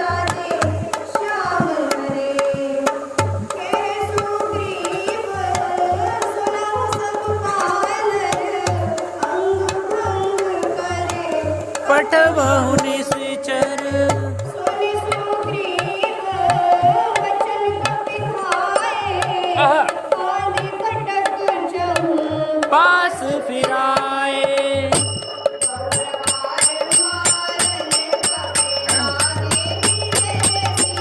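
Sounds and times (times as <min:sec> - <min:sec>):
tabla drum beating: 0:00.0 - 0:31.0
wavering melody: 0:24.9 - 0:31.0.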